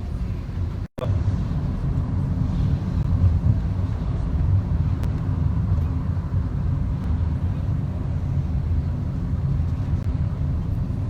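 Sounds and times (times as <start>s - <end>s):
car engine and tyre rumble: 0.0s - 11.0s.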